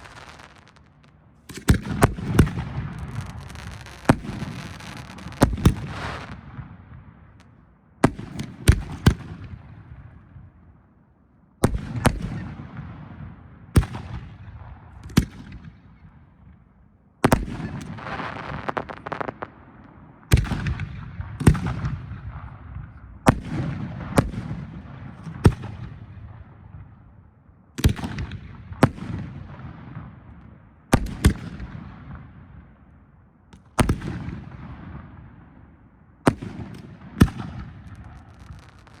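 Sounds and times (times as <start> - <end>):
firework shells booming: 0.0 - 6.5, 36.3 - 39.0.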